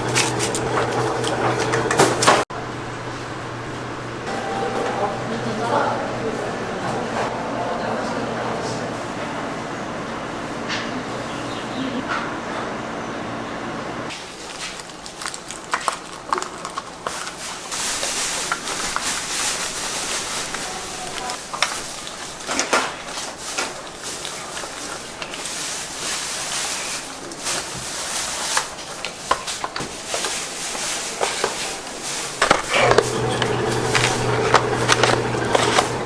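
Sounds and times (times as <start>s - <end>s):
utensils clicking and knocking: 32.4s - 36.0s.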